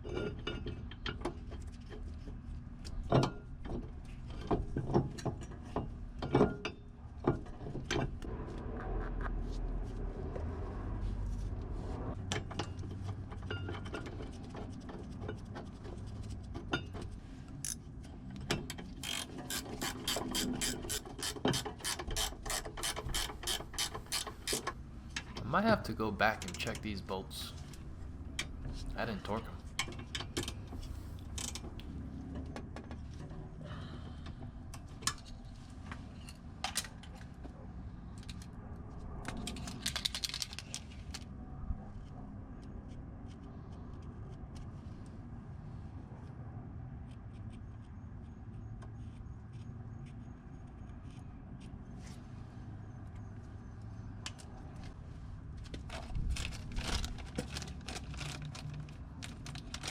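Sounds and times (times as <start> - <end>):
steady low hum: 6.0 - 13.7, 22.4 - 32.3.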